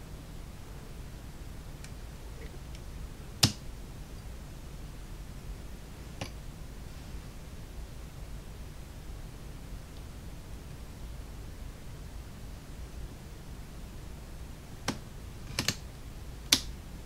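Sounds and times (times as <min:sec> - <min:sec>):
low steady hum: 0:00.0 - 0:17.0
small clicks and taps: 0:03.4 - 0:03.6, 0:14.8 - 0:15.8.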